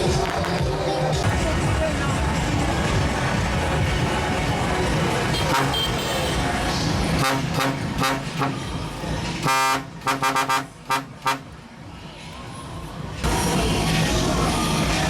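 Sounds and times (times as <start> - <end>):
loud street noise: 0.0 - 15.0
vehicle air horn toots: 5.3 - 6.4, 7.2 - 8.7, 9.4 - 11.5.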